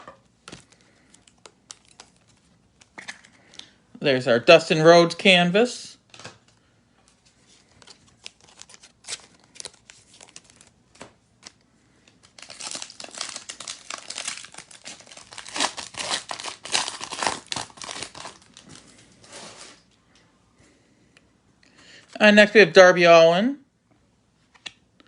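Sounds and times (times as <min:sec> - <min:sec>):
foil wrapper crinkling: 0:07.6 - 0:10.8, 0:11.4 - 0:19.0
foil wrapper tearing: 0:12.2 - 0:18.7.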